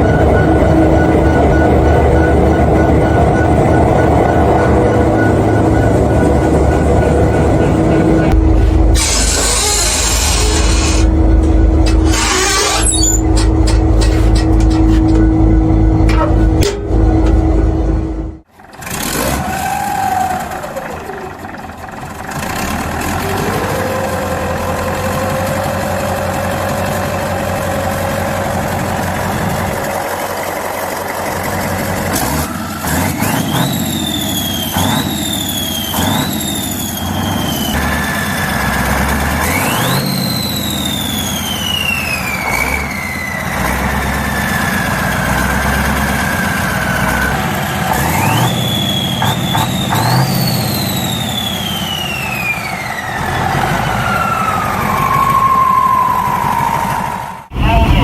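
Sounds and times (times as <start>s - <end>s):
whine rising and falling: 0.0s - 18.4s
old engine running: 0.0s - 53.8s.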